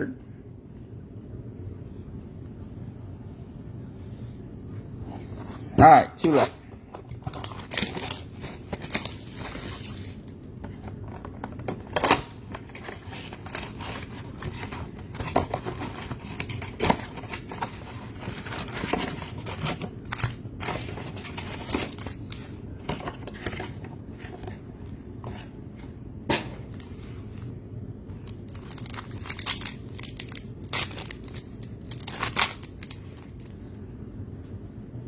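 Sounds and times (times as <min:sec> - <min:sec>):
wrappers crinkling and tearing: 0:06.2 - 0:24.4, 0:28.1 - 0:33.6.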